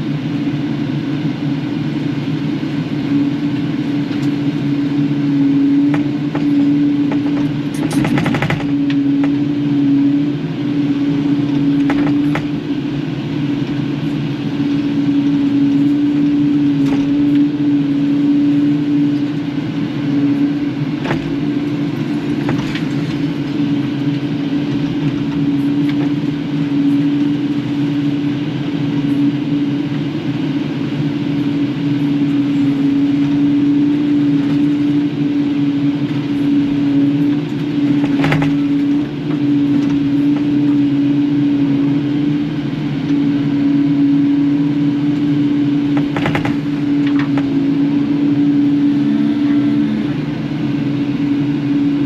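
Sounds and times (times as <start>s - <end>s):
excavator diesel engine running: 0.0s - 52.0s
rattling clatter: 7.1s - 8.8s
knocks and clanks: 7.1s - 8.9s.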